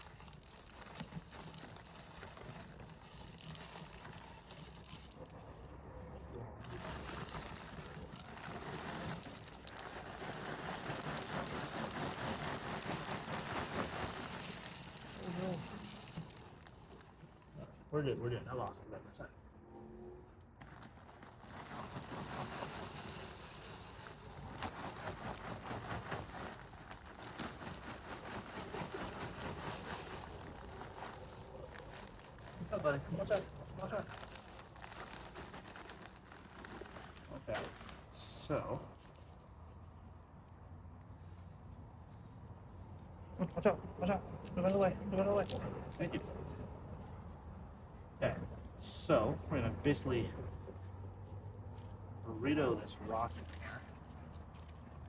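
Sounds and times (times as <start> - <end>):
small stones clattering: 0.0 - 5.6, 6.6 - 17.5, 20.6 - 39.5, 44.4 - 46.2, 52.8 - 55.0
river rocks clicking and rattling: 6.6 - 17.2.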